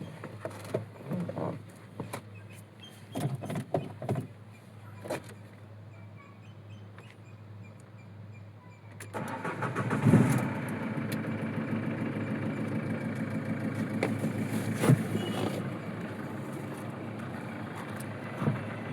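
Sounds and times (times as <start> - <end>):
diesel engine cranking and starting: 9.0 - 18.9
diesel engine idling: 9.2 - 18.9.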